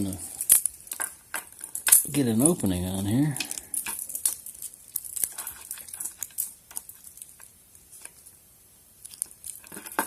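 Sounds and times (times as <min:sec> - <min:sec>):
lock pick scraping and clicking: 0:03.4 - 0:08.2.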